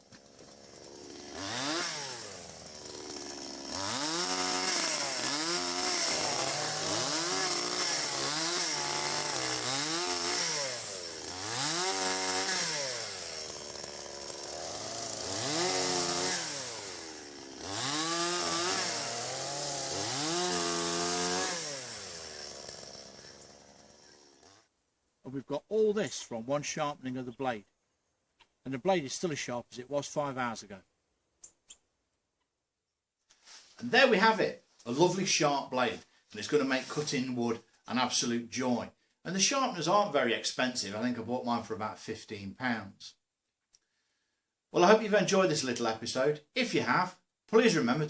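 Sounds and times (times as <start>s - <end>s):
chainsaw cutting wood: 0.0s - 24.8s.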